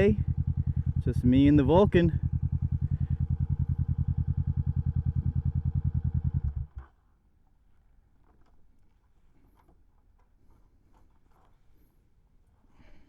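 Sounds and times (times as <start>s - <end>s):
motorcycle engine idling: 0.0s - 6.9s.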